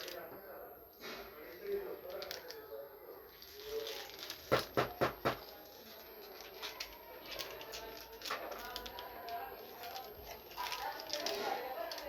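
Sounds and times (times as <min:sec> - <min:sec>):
toy pieces tapping: 0:03.4 - 0:12.0.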